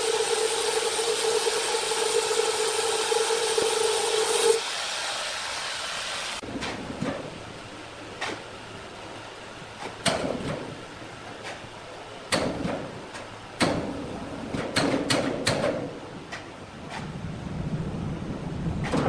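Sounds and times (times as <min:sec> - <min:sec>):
low machinery rumble: 0:05.4 - 0:19.0.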